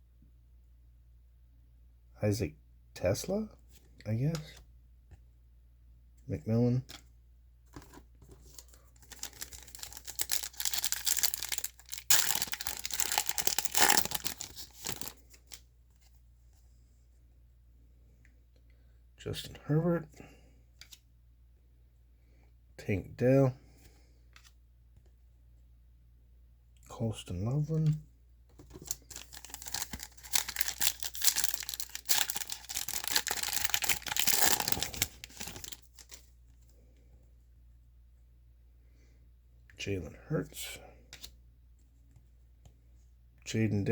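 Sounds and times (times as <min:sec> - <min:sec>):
foil wrapper tearing and crinkling: 0:09.0 - 0:15.2, 0:28.8 - 0:36.2.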